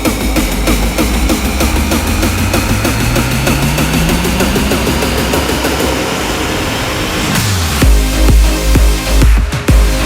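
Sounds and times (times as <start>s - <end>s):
hissing build-up and falling sweep: 0.0s - 7.8s
electronic dance music: 0.0s - 10.0s
heavy kick drum and deep bass: 0.0s - 10.0s.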